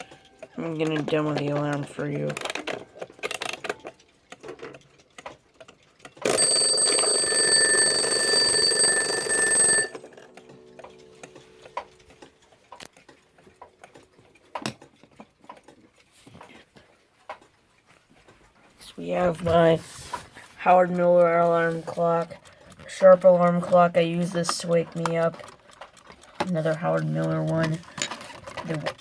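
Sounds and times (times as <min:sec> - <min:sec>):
alarm clock bell ringing: 0:06.2 - 0:10.2.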